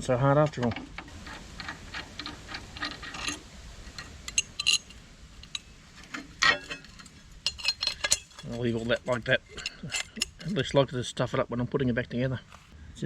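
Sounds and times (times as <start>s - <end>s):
metal tools clicking and clinking: 0.4s - 10.7s.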